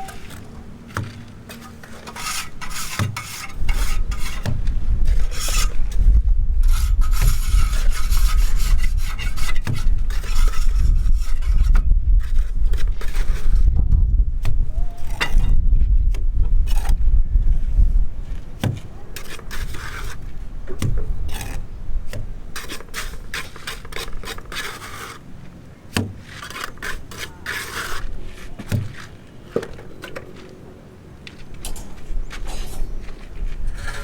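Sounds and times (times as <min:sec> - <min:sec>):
scraping and rubbing strokes: 0:00.0 - 0:13.8, 0:19.2 - 0:20.4, 0:22.6 - 0:25.4, 0:26.1 - 0:34.0
heavy low rumble: 0:03.6 - 0:07.8, 0:10.0 - 0:18.4.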